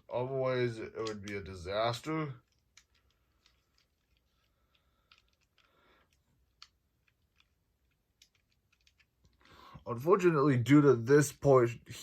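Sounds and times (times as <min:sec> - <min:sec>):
faint plastic clicks: 0:02.4 - 0:09.8.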